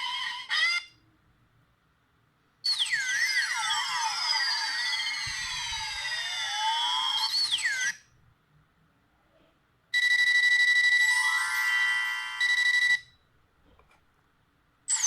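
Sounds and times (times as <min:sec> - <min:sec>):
fast-pulsing beep ringtone: 0:10.0 - 0:13.1
ringtone with electronic pitch glides: 0:10.1 - 0:13.1.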